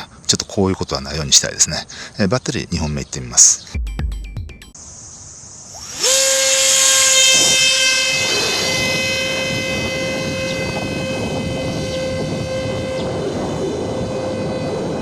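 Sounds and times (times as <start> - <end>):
electric motor high whine: 5.7 - 15.0.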